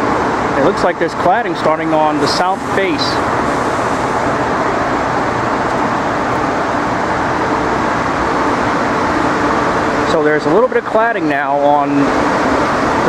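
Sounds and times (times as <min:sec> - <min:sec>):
city street traffic: 0:00.0 - 0:13.0.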